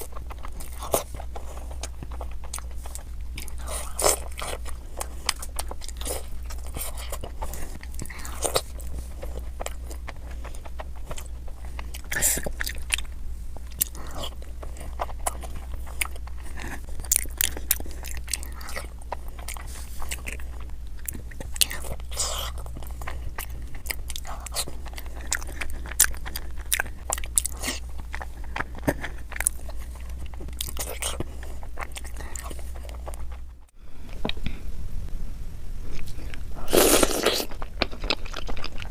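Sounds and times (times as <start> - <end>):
crunchy eating and chewing: 0.0 - 34.6, 35.8 - 38.9.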